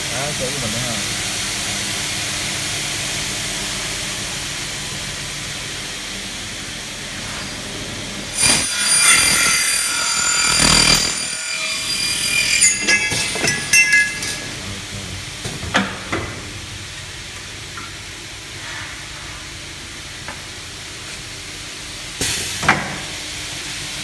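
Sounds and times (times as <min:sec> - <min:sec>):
cutting saw hissing: 0:08.3 - 0:14.6
saw blade ringing through metal: 0:08.4 - 0:14.6.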